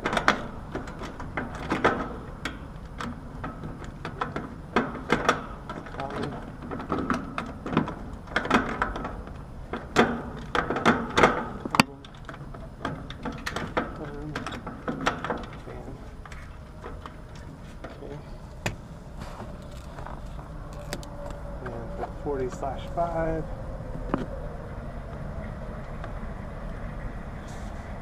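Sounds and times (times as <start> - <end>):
tools clicking and rattling on metal: 0.0 - 18.4.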